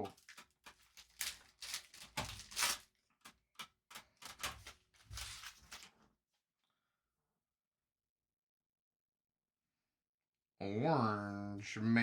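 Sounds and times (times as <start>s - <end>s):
cardboard and wrapper rustling: 0.0s - 6.0s.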